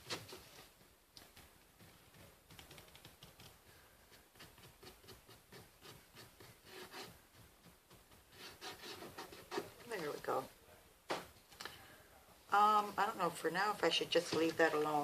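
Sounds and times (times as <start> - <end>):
paint rubbing on cardboard: 1.8 - 10.4.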